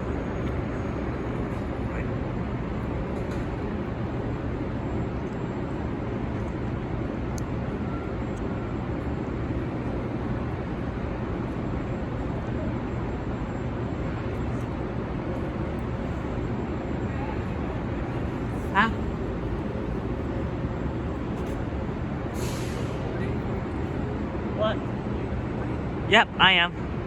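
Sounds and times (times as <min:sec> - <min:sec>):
vehicle engines and street traffic: 0:00.0 - 0:27.0.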